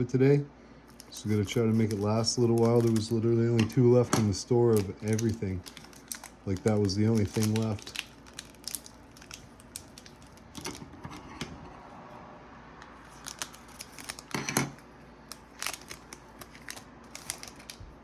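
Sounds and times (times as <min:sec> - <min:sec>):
foil wrapper crinkling and tearing: 0:00.9 - 0:10.9, 0:13.0 - 0:14.4, 0:15.2 - 0:18.0
small clicks and rustles: 0:15.3 - 0:17.8.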